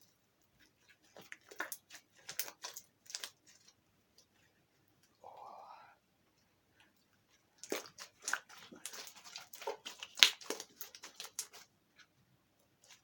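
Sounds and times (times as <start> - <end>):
sticky clicks and crackling pops: 7.6 - 11.7.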